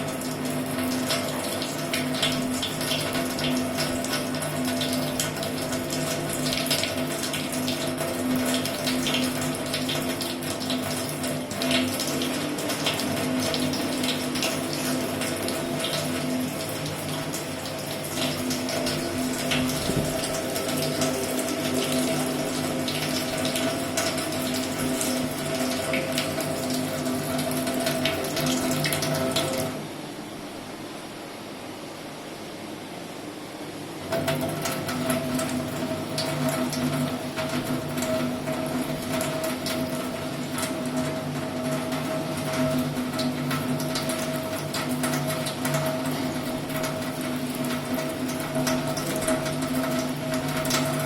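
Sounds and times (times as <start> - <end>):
water running from tap: 0.0 - 29.8, 34.1 - 51.0
steady hum: 9.4 - 34.1.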